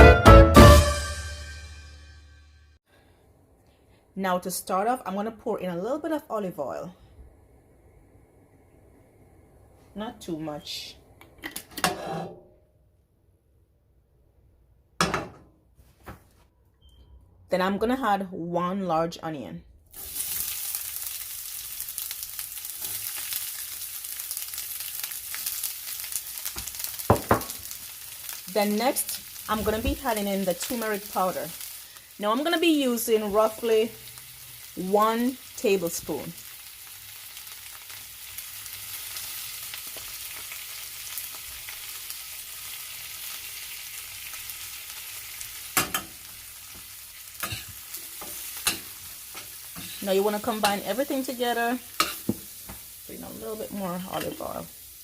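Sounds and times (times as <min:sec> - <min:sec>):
onion sizzling in oil: 0:19.9 - 0:55.0.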